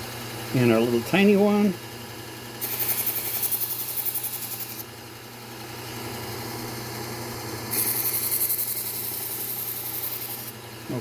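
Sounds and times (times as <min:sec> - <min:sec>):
knife grinding on belt: 0:07.7 - 0:10.5.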